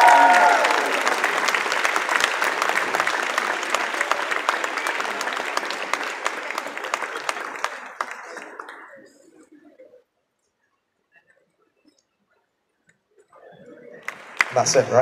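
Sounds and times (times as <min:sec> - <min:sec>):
person cheering: 0:00.0 - 0:01.0
audience applauding: 0:00.0 - 0:09.3, 0:13.8 - 0:15.0.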